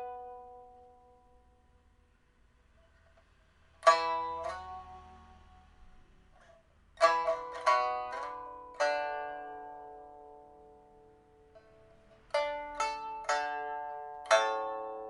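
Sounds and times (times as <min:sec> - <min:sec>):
pipa plucked notes and chords: 0:00.0 - 0:01.5, 0:03.8 - 0:05.2, 0:07.0 - 0:15.0.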